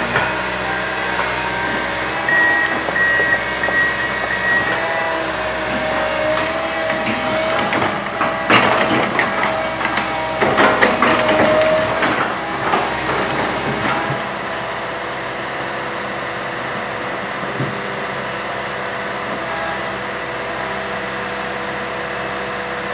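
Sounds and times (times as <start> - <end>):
knocks and rattles: 0.0 - 14.6
excavator diesel engine: 0.0 - 22.9
hydraulic whine: 0.0 - 22.9.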